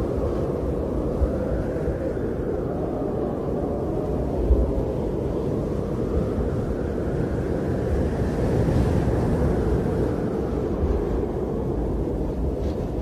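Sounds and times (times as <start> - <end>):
wind blowing across microphone: 0.0 - 13.0.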